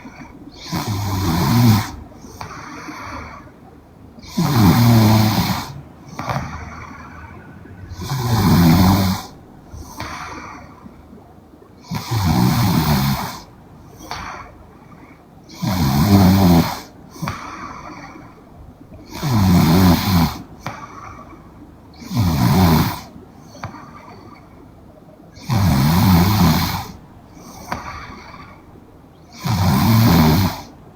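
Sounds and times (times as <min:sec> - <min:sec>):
quiet breathing: 0:00.0 - 0:30.9
woman snoring loudly: 0:00.6 - 0:02.0, 0:04.2 - 0:09.4, 0:11.9 - 0:13.4, 0:15.6 - 0:16.9, 0:19.2 - 0:20.4, 0:22.0 - 0:23.1, 0:25.4 - 0:27.0, 0:29.4 - 0:30.7.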